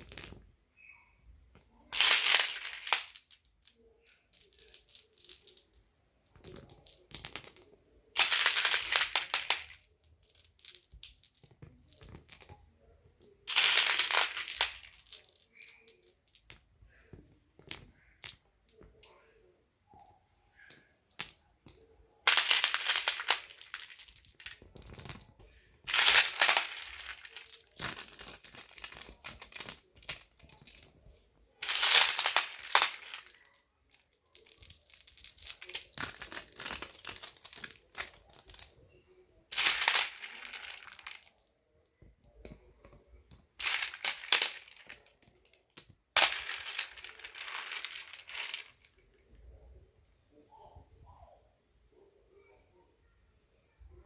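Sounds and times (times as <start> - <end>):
marbles rattling into silicone toy: 1.9 - 12.5, 13.2 - 16.6, 20.7 - 31.0, 31.6 - 38.7, 39.5 - 41.5, 43.3 - 49.0.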